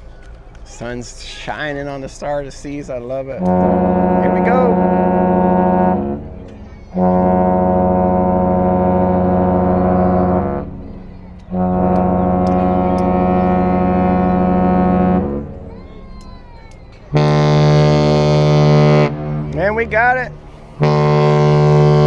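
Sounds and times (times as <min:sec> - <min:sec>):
deep ship horn blasts: 0:03.4 - 0:15.8, 0:17.1 - 0:22.0
lower-pitched horn: 0:03.4 - 0:15.8, 0:17.1 - 0:22.0.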